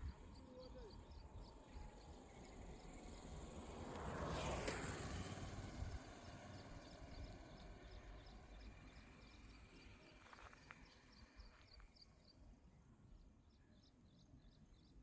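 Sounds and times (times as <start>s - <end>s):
vehicle passing by: 0.1s - 11.6s.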